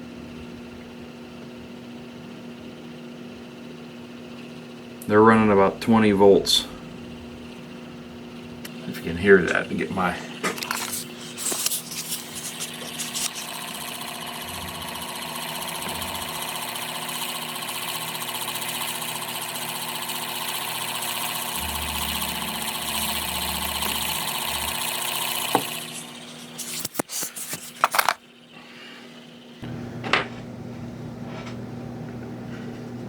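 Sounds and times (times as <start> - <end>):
small gear motor whirring: 10.6 - 28.3.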